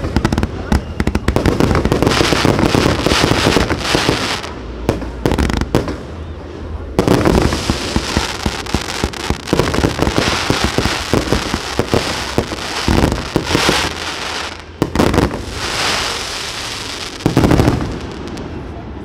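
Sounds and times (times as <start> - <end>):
fireworks crackling: 0.0 - 18.8
firework shells booming: 7.0 - 18.6.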